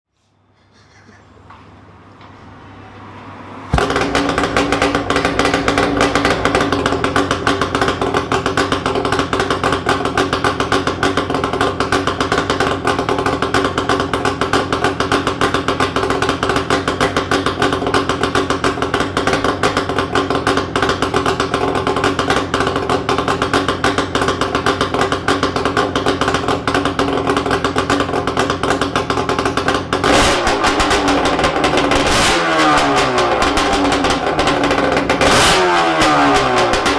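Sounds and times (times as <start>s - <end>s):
engine revving: 2.6s - 23.4s, 29.9s - 36.9s
two-stroke motorcycle engine idling: 3.7s - 36.9s.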